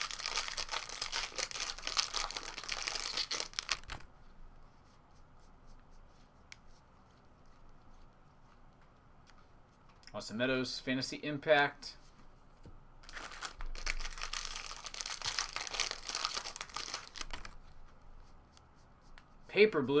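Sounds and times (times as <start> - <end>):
foil wrapper tearing and crinkling: 0.0 - 4.0, 13.0 - 17.6.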